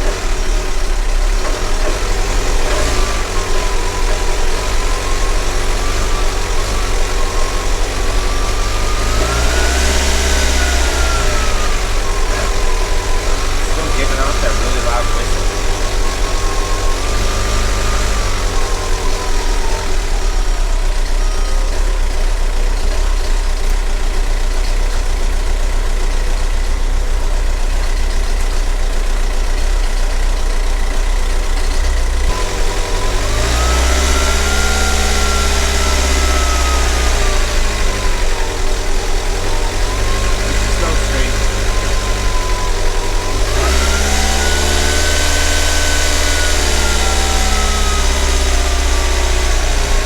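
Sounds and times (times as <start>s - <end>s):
diesel engine idling: 0.0s - 50.0s
engine revving: 0.0s - 50.0s.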